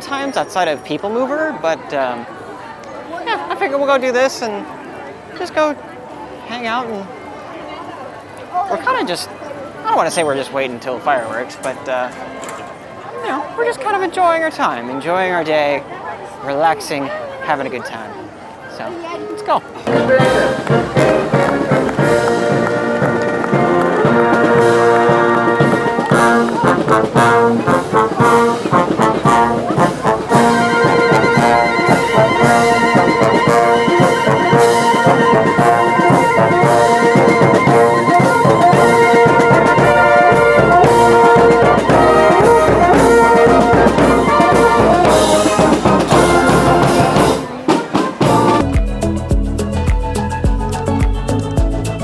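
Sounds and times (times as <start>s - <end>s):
brass band music: 19.2s - 52.0s
music with heavy bass: 48.4s - 52.0s.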